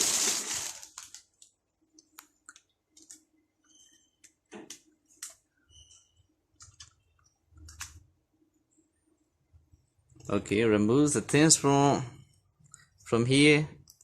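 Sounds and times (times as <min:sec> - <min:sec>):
plastic rustling: 0:00.0 - 0:01.6.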